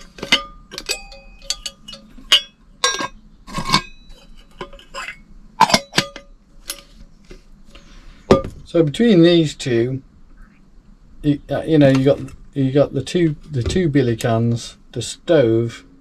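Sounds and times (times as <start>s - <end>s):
metal cookware clinking: 0.0s - 6.9s.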